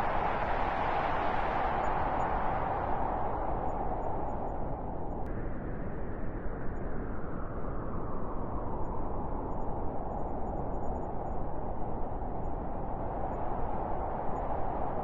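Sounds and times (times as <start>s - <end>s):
strong wind blowing: 0.0s - 15.0s.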